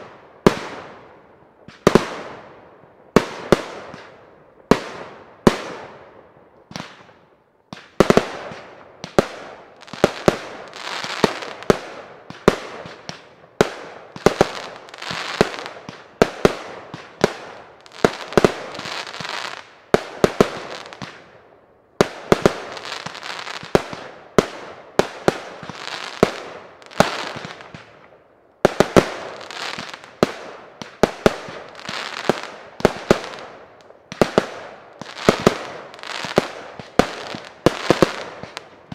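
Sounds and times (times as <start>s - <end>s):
fireworks aerial bangs: 28.7s - 38.9s.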